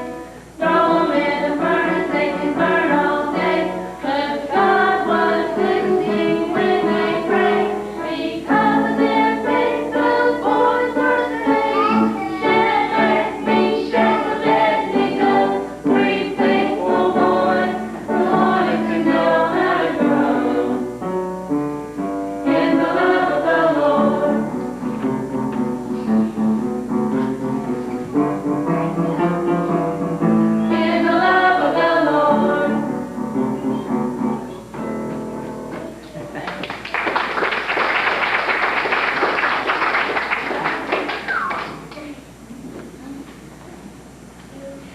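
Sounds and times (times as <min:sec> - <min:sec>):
group singing in chorus: 0:00.6 - 0:21.1, 0:22.4 - 0:25.2, 0:30.2 - 0:33.1.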